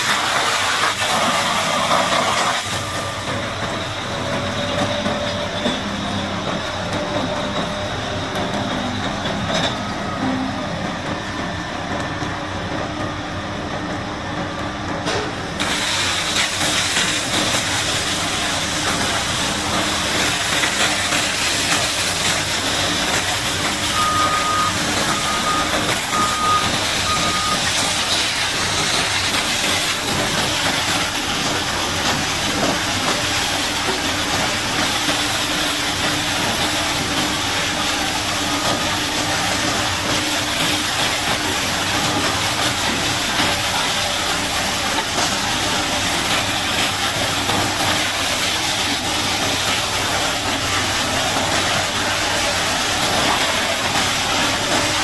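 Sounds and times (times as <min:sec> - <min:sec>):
water jet hissing: 0:00.0 - 0:06.8, 0:15.6 - 0:55.0
heavy machine engine running: 0:00.0 - 0:55.0
reversing alarm beeps: 0:23.8 - 0:28.1.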